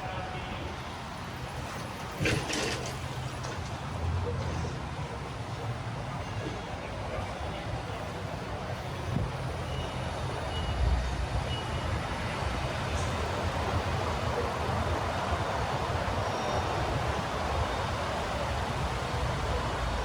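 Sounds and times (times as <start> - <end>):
city street traffic: 0.0 - 20.0.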